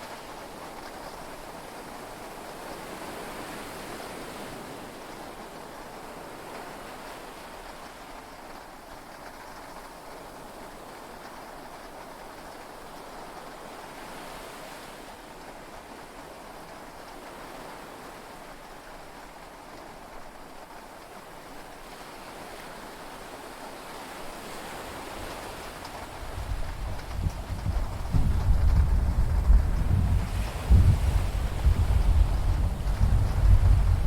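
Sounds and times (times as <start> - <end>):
sea waves: 21.5 - 28.7
heavy rain: 25.6 - 34.0.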